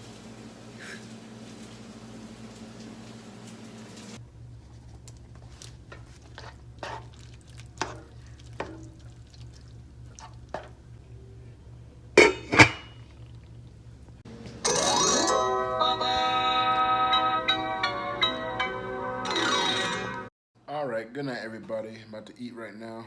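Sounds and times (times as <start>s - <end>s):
steady low hum: 0.0s - 14.4s
dishes clattering: 12.2s - 13.2s
dishes clinking: 12.2s - 13.2s.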